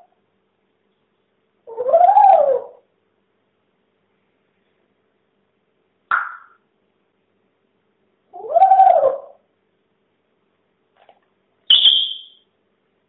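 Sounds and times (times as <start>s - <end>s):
parrot calling: 8.4s - 9.4s
parrot high whistle: 11.7s - 12.4s.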